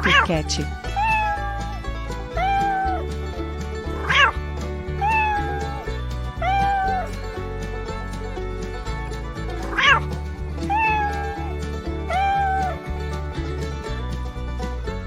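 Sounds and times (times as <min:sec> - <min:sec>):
background music: 0:00.0 - 0:15.0
cat meowing: 0:00.9 - 0:01.7, 0:02.4 - 0:03.0, 0:04.0 - 0:04.4, 0:05.0 - 0:05.8, 0:06.4 - 0:07.1, 0:09.7 - 0:10.0, 0:10.7 - 0:11.5, 0:12.1 - 0:12.8.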